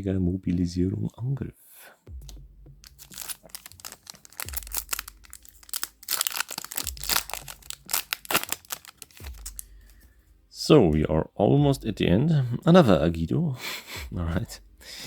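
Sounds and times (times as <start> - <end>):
foil wrapper crinkling and tearing: 2.8 - 10.0.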